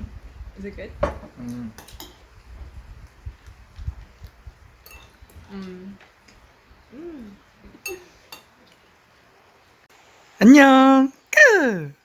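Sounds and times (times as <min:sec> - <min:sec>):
cutlery clinking on dishes: 0:01.1 - 0:02.2, 0:04.8 - 0:05.2, 0:07.8 - 0:08.6
soft voice sounds: 0:06.9 - 0:07.4, 0:10.4 - 0:12.0.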